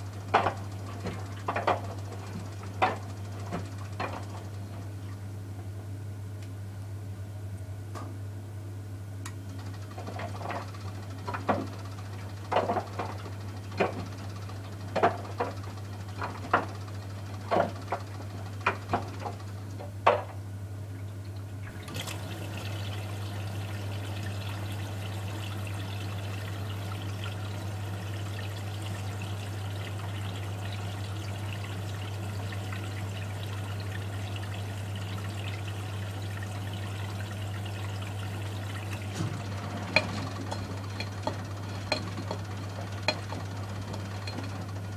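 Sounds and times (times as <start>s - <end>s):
water rushing into machine: 21.6s - 44.4s
washing machine clicks and knocks: 38.9s - 44.8s.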